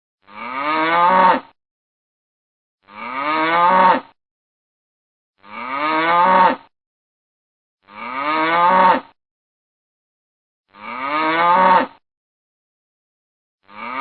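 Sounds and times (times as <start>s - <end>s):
cow mooing: 0.2s - 1.6s, 2.8s - 4.1s, 5.4s - 6.6s, 7.8s - 9.2s, 10.7s - 12.0s, 13.7s - 14.0s.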